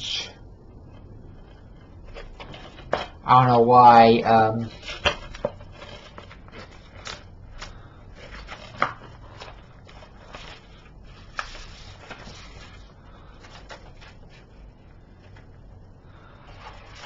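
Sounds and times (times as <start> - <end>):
plastic case rubbing and rustling: 1.4 - 3.2, 4.7 - 7.1.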